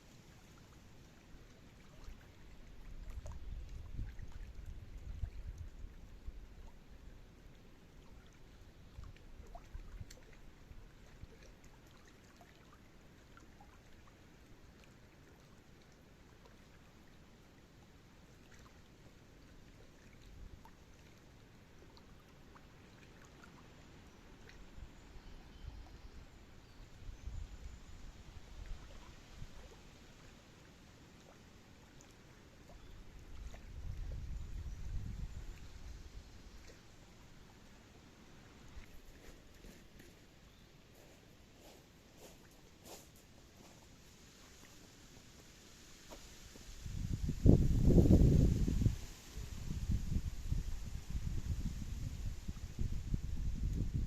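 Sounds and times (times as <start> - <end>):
trickle of running water: 0.1 - 25.2, 42.4 - 54.0.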